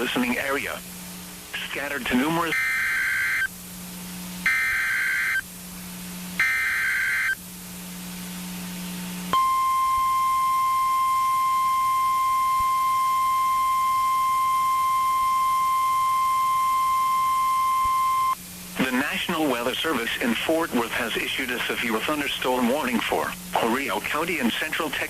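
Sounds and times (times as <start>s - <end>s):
steady warning alarm tone: 1.8s - 3.6s, 4.4s - 5.5s, 6.4s - 7.4s, 9.3s - 18.4s.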